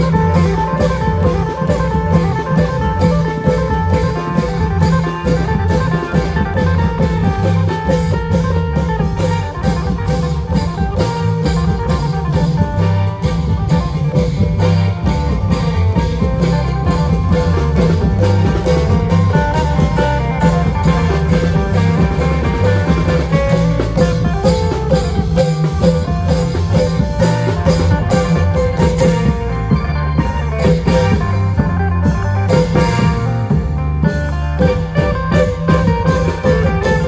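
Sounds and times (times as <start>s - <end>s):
drum strokes: 0.0s - 37.0s
plucked string melody: 0.0s - 37.0s.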